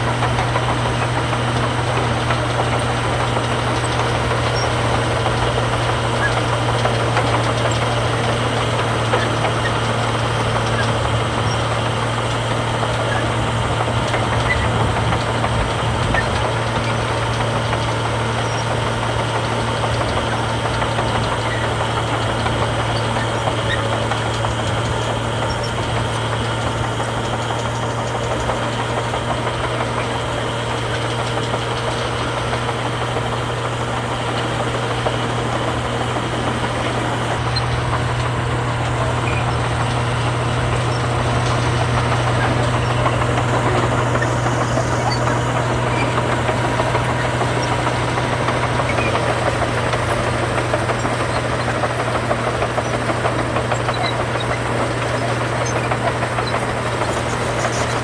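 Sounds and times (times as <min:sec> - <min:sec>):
heavy diesel engine running: 0:00.0 - 0:58.0.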